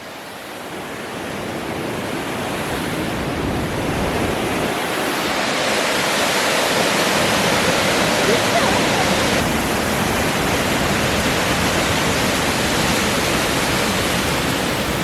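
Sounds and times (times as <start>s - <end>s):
waterfall roaring: 0.0s - 15.0s.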